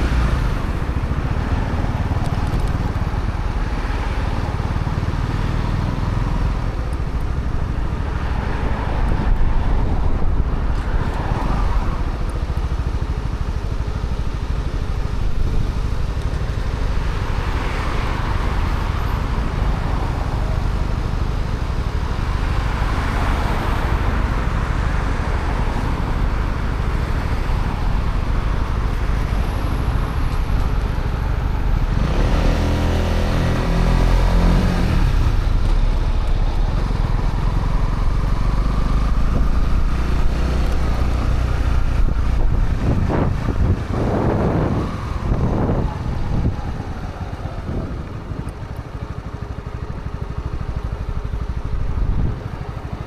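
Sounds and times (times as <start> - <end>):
motorcycle engine running: 0.0 - 9.2, 32.9 - 53.0
low wind rumble: 0.0 - 53.0.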